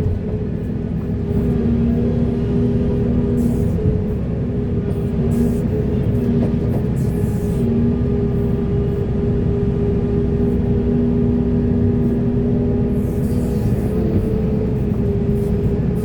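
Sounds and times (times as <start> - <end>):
diesel engine droning: 0.0 - 16.0
hydraulic whine: 7.0 - 16.0.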